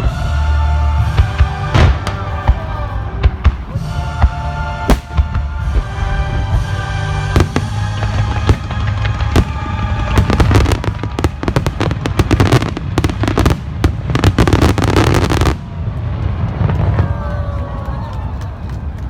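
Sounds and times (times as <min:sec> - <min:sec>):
music soundtrack: 0:00.0 - 0:16.8
fireworks bangs and crackles: 0:00.0 - 0:19.0.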